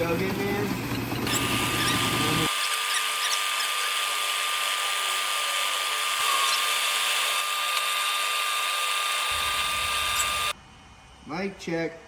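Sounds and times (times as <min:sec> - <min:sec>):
metal lathe cutting whine: 0:00.0 - 0:10.6.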